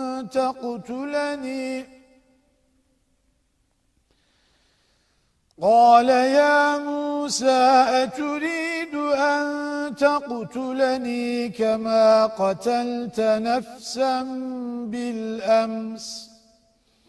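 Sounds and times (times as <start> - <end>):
person chanting melodically: 0.0 - 2.4, 5.6 - 16.4.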